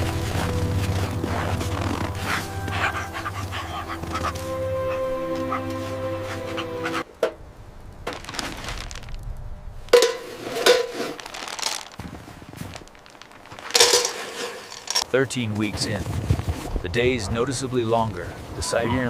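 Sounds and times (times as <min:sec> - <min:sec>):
crunching rustling knocks: 0:08.0 - 0:09.3, 0:09.9 - 0:15.0.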